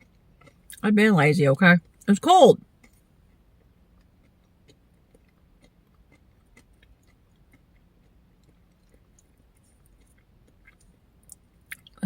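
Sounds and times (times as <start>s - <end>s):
quiet chewing clicks: 0.0s - 0.8s, 2.8s - 12.0s.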